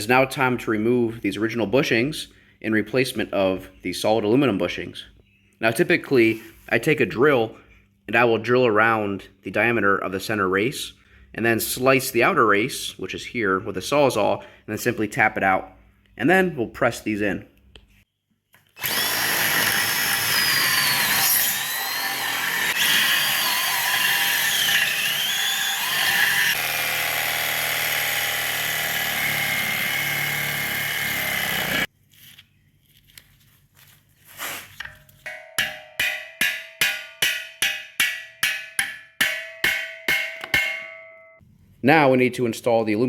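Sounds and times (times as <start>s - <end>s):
power tool cutting with whine: 18.8s - 31.9s
hammer striking metal: 35.2s - 41.4s.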